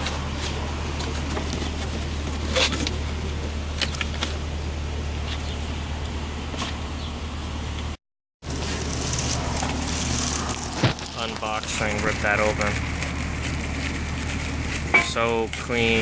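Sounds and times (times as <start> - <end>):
car parts clicking and knocking: 0.0 - 4.5.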